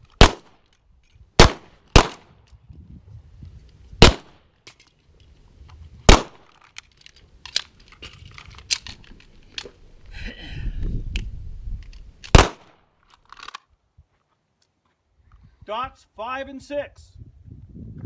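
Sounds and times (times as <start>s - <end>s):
pistol gunshots: 0.2s - 0.6s, 1.4s - 2.3s, 4.0s - 4.4s, 6.1s - 6.5s, 12.3s - 12.8s.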